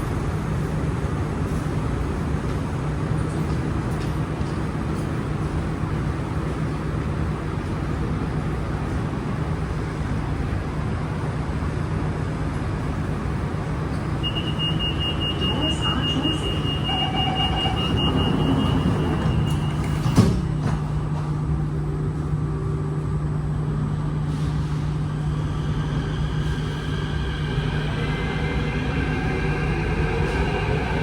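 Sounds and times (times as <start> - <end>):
metro train hum and rumble: 0.0 - 31.0
high door warning tone: 13.9 - 20.9.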